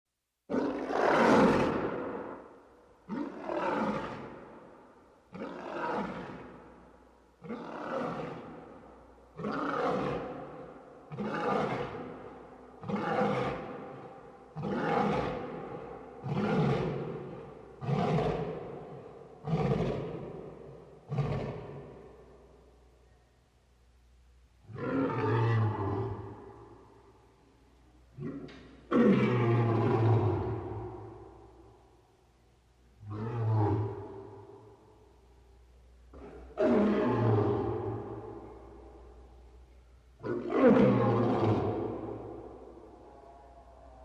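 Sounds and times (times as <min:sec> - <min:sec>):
lion roaring: 0:03.1 - 0:04.6, 0:05.3 - 0:06.6, 0:07.4 - 0:08.7, 0:09.4 - 0:22.0, 0:24.7 - 0:26.5, 0:28.2 - 0:31.0, 0:36.1 - 0:38.6, 0:40.2 - 0:44.0.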